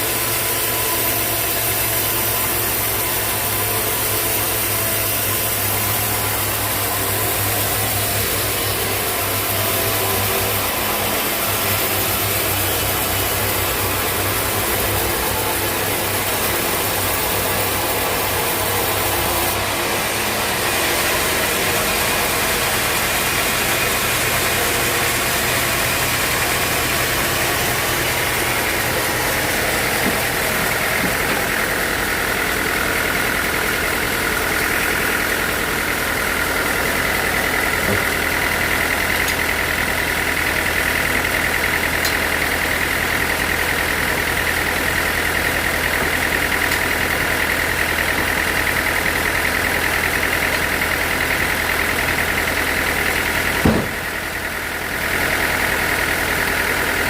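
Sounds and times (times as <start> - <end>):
sawmill machinery humming: 0.0 - 57.0
sharp knock: 53.6 - 54.0.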